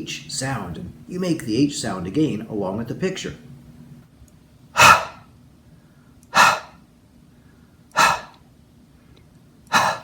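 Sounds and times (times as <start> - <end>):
man breathing out puffs of air: 5.8 - 6.8, 7.4 - 8.4, 9.7 - 10.0.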